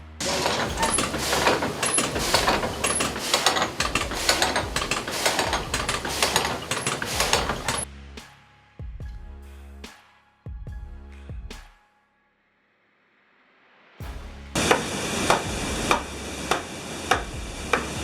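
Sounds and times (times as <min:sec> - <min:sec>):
sawmill machinery clattering: 0:00.0 - 0:07.9, 0:14.6 - 0:18.0.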